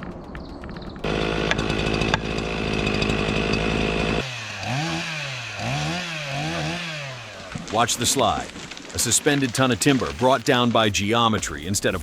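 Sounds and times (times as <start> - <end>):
chainsaw revving: 1.0 - 10.5.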